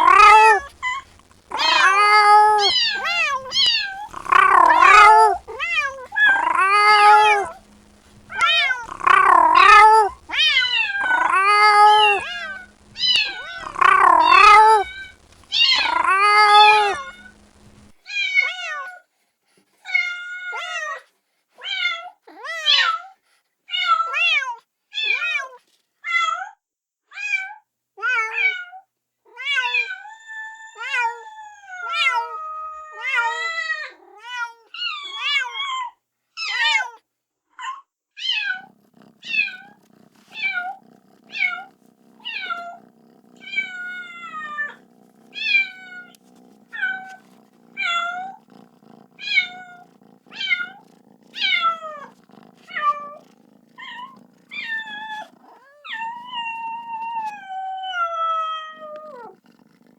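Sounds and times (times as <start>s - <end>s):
kitten meowing: 0.0s - 18.0s, 38.3s - 42.8s, 43.4s - 59.4s.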